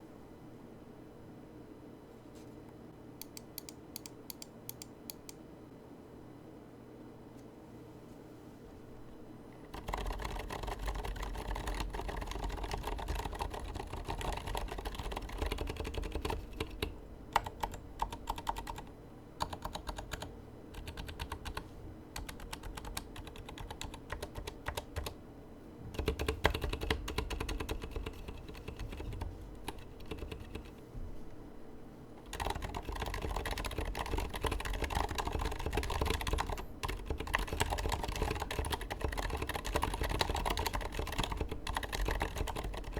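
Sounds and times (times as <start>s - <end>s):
quiet keyboard keystrokes: 3.2s - 5.4s, 9.6s - 25.2s, 25.9s - 30.8s, 32.2s - 42.9s.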